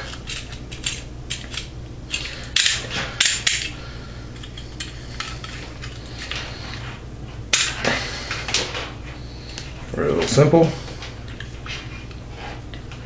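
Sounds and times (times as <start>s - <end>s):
tool and wires rattling: 0.0s - 3.8s
low steady hum: 0.0s - 13.0s.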